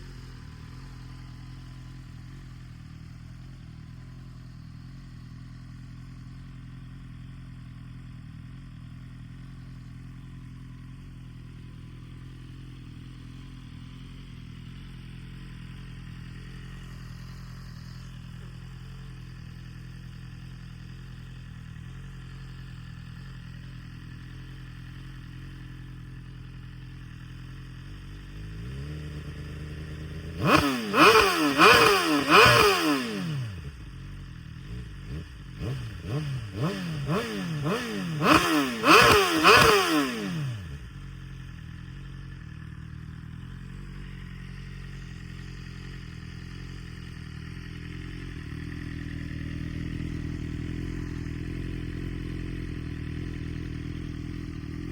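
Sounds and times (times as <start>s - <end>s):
motorcycle engine idling: 0.0s - 54.9s
sharp throttle blips: 36.6s - 40.6s.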